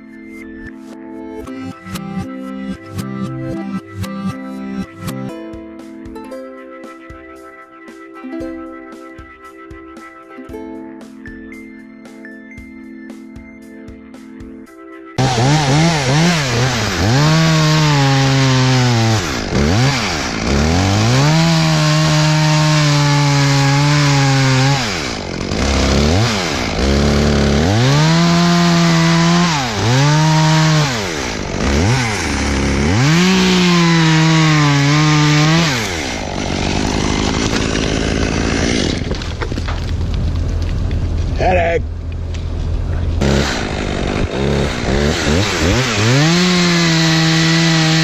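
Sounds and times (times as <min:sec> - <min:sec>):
chainsaw revving: 0:15.2 - 0:39.4, 0:43.2 - 0:48.0.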